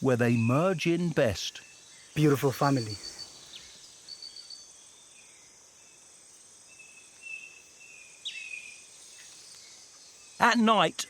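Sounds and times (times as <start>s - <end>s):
chirps and whistled calls: 0.0s - 11.0s.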